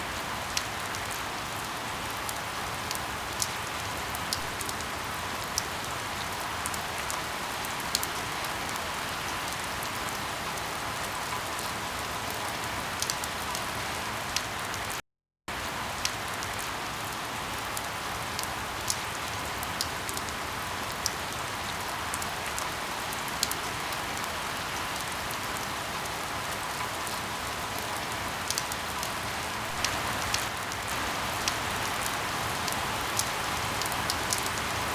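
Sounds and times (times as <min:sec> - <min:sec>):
steady rain hissing: 0:15.5 - 0:34.9.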